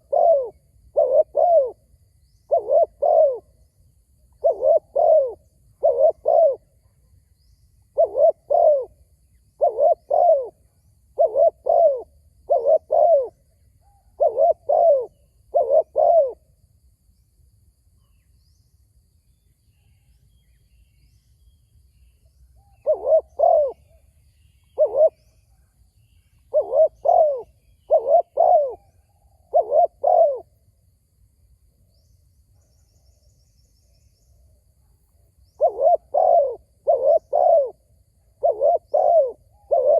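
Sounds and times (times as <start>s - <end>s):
dove cooing: 0.0s - 1.9s, 2.5s - 3.6s, 4.3s - 6.7s, 7.9s - 9.0s, 9.6s - 16.4s, 22.8s - 24.0s, 24.7s - 25.3s, 26.5s - 30.5s, 35.5s - 39.9s.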